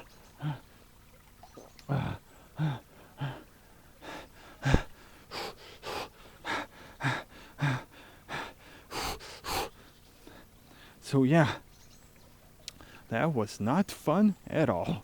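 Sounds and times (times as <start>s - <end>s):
man gasping and panting: 0.4s - 0.7s, 1.9s - 11.6s.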